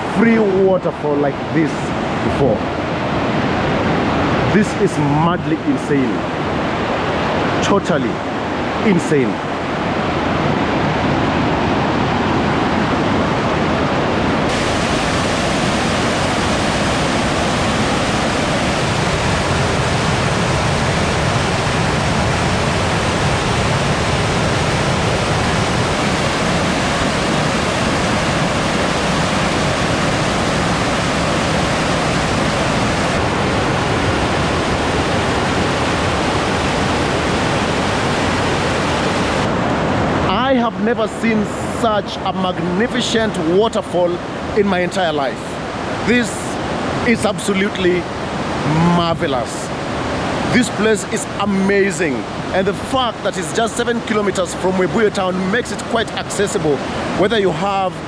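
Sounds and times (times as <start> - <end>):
waterfall crashing onto rocks: 14.5 - 21.9.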